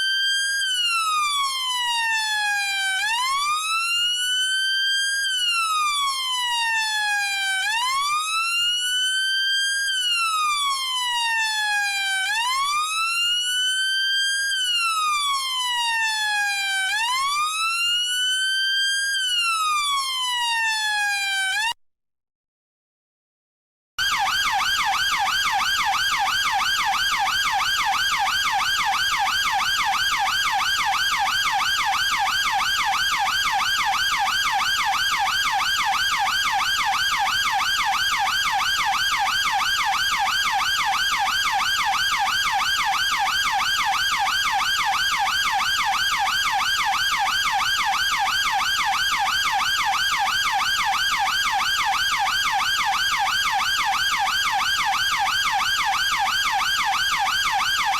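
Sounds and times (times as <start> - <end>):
police car siren warbling: 18.9 - 21.7, 24.0 - 57.9.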